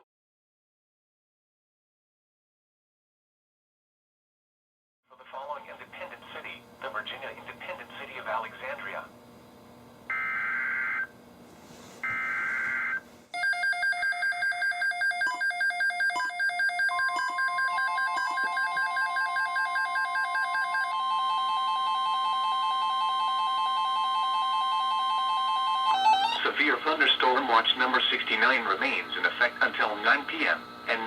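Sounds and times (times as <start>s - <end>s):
steady warning alarm tone: 10.1s - 11.2s, 12.0s - 27.0s
electronic alert alarms beeping: 12.0s - 13.6s, 14.4s - 26.4s.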